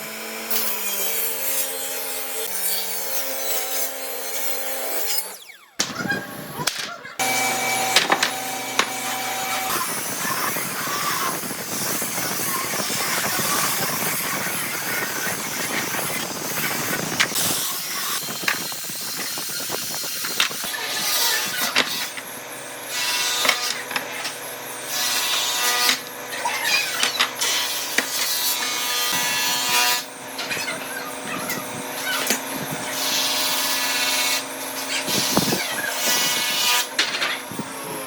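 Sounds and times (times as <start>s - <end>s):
power tool motor whine: 5.1s - 5.8s, 7.2s - 38.0s
tool cutting into wood: 7.2s - 22.3s.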